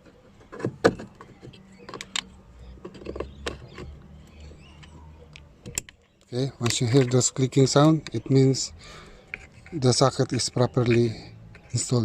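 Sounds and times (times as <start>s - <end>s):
plastic plugs clicking: 1.0s - 8.3s, 9.3s - 12.0s.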